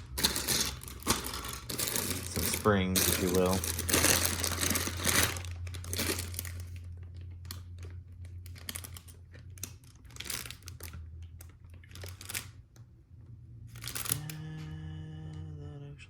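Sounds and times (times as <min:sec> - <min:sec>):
plastic bags crinkling: 0:00.0 - 0:12.6, 0:13.7 - 0:14.4
plastic parts clicking: 0:00.0 - 0:12.9, 0:13.7 - 0:14.4
steady low hum: 0:00.0 - 0:16.0.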